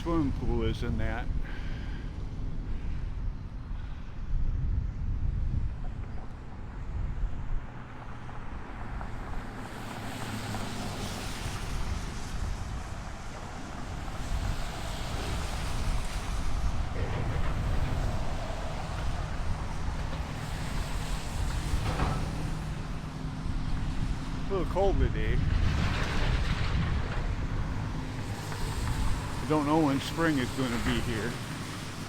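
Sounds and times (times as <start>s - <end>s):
wind buffeting microphone: 0.0s - 32.0s
broad hiss: 27.8s - 32.0s.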